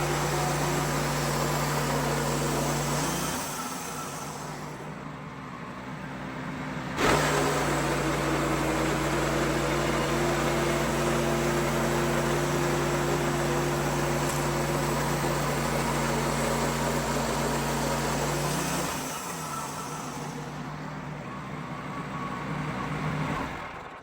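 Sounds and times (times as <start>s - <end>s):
sawmill engine running: 0.0s - 24.0s.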